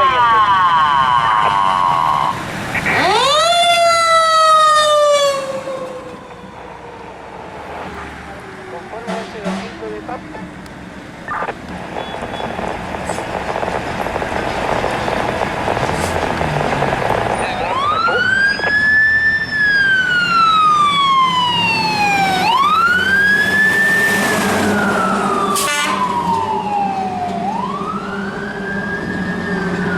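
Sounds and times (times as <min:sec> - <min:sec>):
fire engine siren wailing: 0:00.0 - 0:09.2, 0:14.2 - 0:29.9
truck engine hum: 0:00.0 - 0:29.9
sharp crackle: 0:11.3 - 0:18.8.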